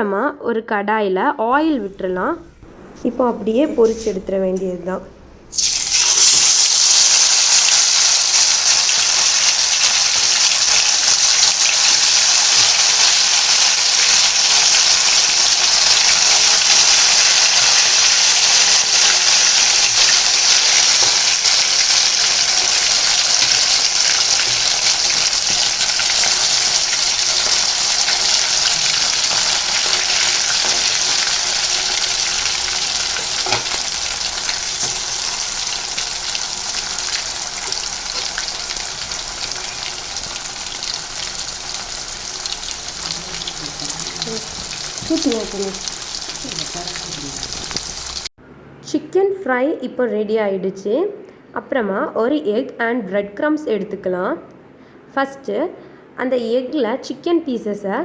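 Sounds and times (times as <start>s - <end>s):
chicken sizzling in hot oil: 5.5s - 48.3s.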